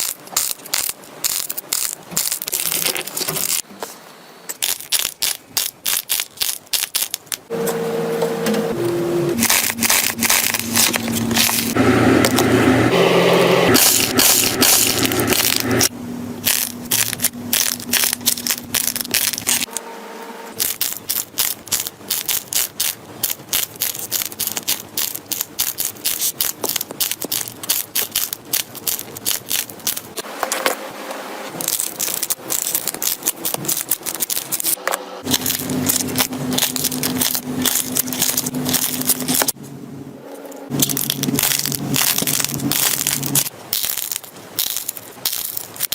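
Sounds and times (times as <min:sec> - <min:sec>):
slime crackling and popping: 0:00.0 - 0:03.6, 0:04.5 - 0:07.4, 0:13.7 - 0:19.7, 0:20.6 - 0:30.2, 0:31.5 - 0:39.6, 0:40.7 - 0:45.9.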